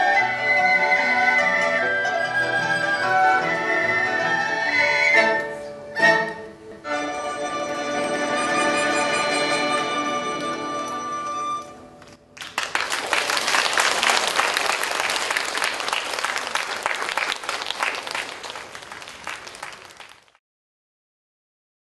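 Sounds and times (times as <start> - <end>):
audience applause: 12.4 - 20.4.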